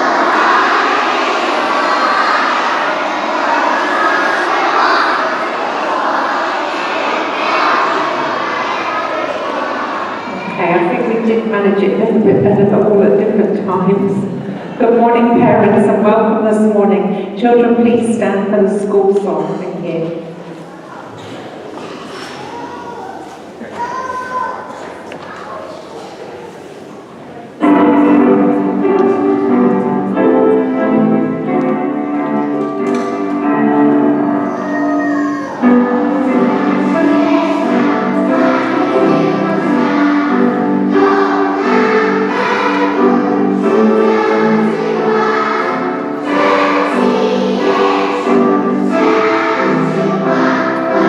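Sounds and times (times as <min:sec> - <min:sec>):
children singing together: 0:00.0 - 0:16.3, 0:27.6 - 0:51.0
keyboard playing held chords: 0:27.6 - 0:51.0.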